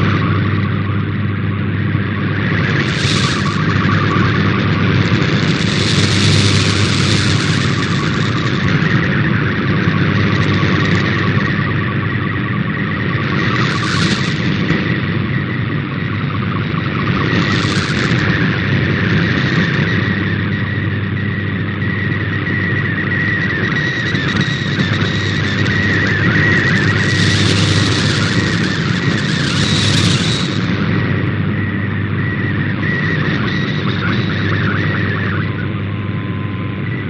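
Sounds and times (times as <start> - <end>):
steady mains hum: 0.0 - 37.0
warbling data tones: 0.0 - 37.0
radio static: 2.0 - 15.4, 16.8 - 20.0, 23.4 - 31.1, 33.3 - 37.0.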